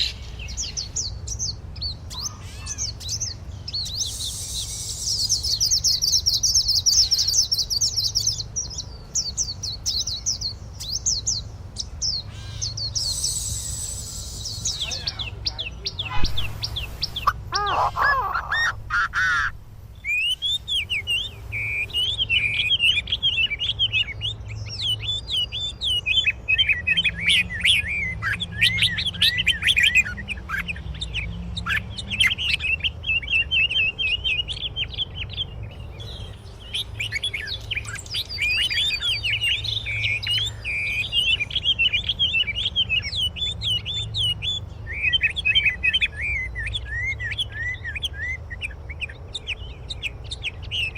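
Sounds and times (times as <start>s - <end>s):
small birds chirping: 0.0s - 50.9s
lower rising bird call: 12.3s - 23.0s.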